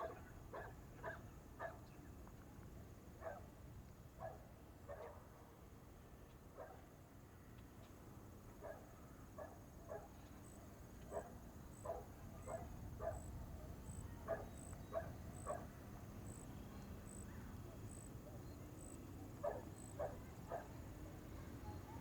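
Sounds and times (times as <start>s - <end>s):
dog barking: 0.0s - 1.8s, 3.2s - 3.5s, 4.2s - 5.2s, 6.6s - 6.8s, 8.6s - 10.2s, 11.1s - 13.3s, 14.2s - 15.7s, 19.4s - 20.8s.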